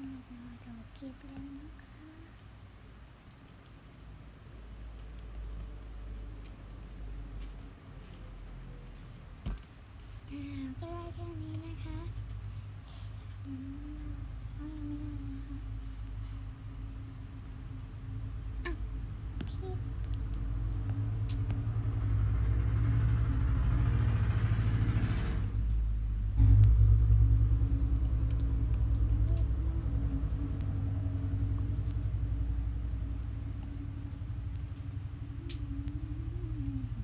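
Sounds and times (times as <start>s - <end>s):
loud low rumble: 10.3s - 37.0s.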